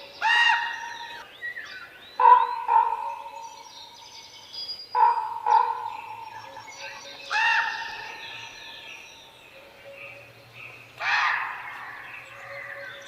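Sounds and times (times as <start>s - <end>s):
small birds chirping: 0.0s - 13.0s
crow cawing: 11.0s - 12.0s.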